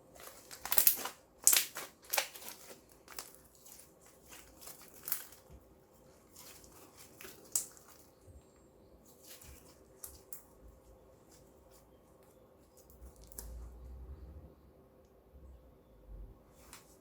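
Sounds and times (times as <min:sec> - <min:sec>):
slime sticky crackles and pops: 0:00.2 - 0:05.5, 0:06.9 - 0:08.1.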